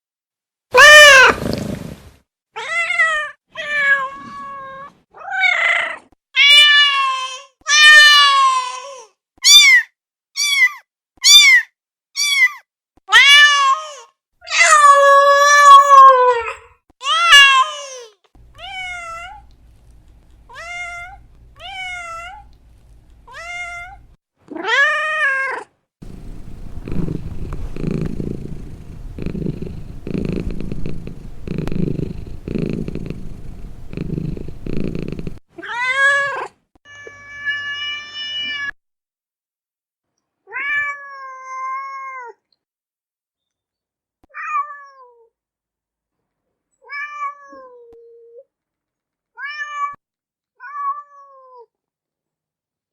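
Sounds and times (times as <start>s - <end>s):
cat meowing: 0.8s - 1.4s, 14.5s - 16.4s, 24.6s - 36.1s
cat purring: 1.3s - 2.1s, 26.0s - 35.4s.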